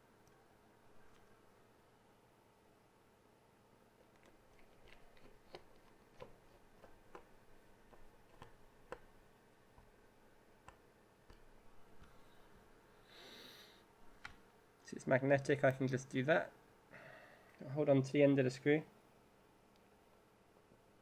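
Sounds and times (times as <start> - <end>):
screwdriver clicking on plastic: 4.2 - 9.1.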